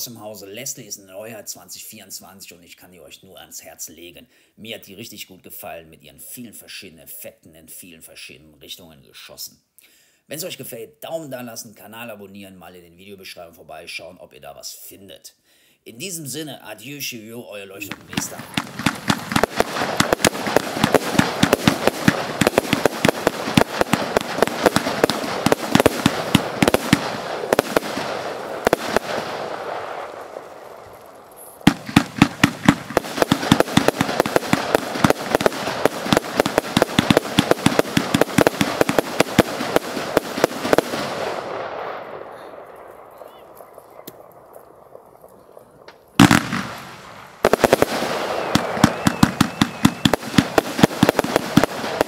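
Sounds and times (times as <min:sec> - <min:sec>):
fireworks crackling: 0:17.6 - 0:52.0
fireworks firing volleys: 0:17.7 - 0:52.0.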